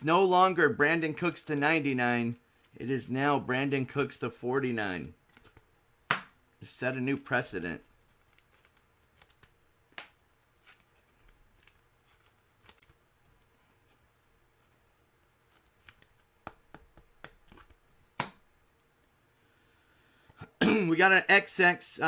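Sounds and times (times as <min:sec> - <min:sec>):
cards clicking and rustling: 0:05.2 - 0:06.4, 0:07.1 - 0:18.9.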